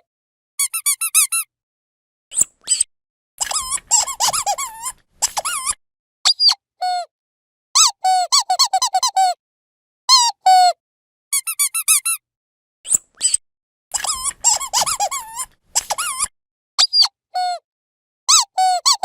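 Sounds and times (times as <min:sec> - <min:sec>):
dog squeaky toy squeaking: 0:03.4 - 0:06.6, 0:11.4 - 0:12.2, 0:13.2 - 0:17.1, 0:18.3 - 0:19.0.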